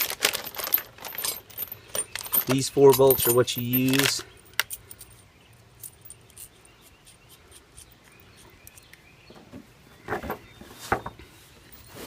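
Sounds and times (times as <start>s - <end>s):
loose bolts clicking and scratching: 0.0s - 9.0s.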